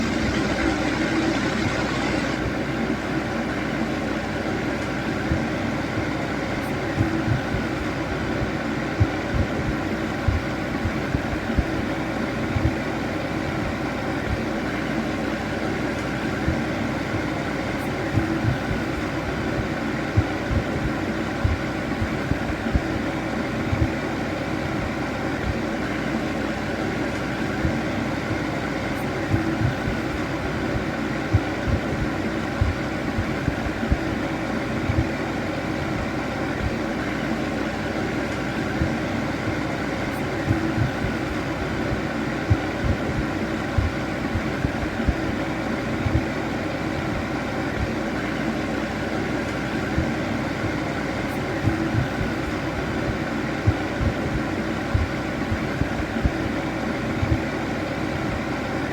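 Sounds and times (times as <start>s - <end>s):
fan heater whirring: 0.0s - 58.9s
soft low thumps: 40.5s - 41.2s, 41.9s - 45.2s.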